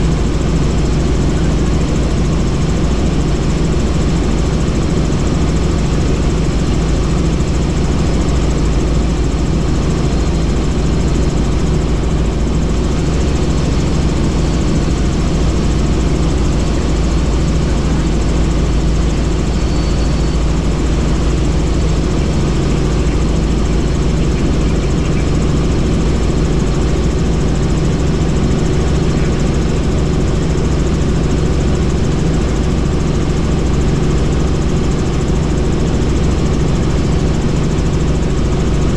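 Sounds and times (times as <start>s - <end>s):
helicopter rotor and engine: 0.0s - 38.9s.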